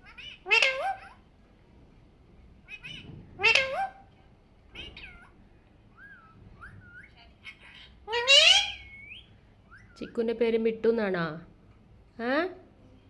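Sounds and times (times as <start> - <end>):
parakeet calling: 0.0 - 1.2, 2.6 - 4.1, 4.7 - 10.4.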